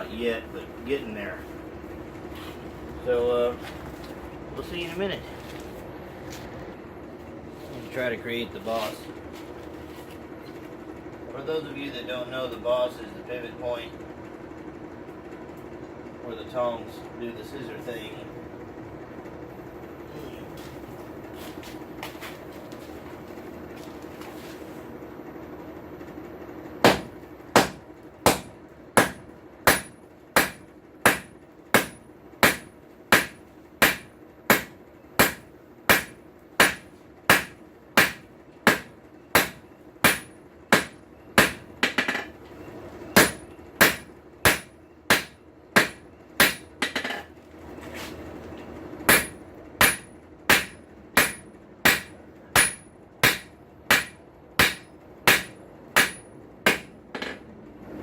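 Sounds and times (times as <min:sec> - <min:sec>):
hammer striking steel on anvil: 0:26.9 - 0:42.3, 0:43.2 - 0:47.3, 0:49.1 - 0:57.4.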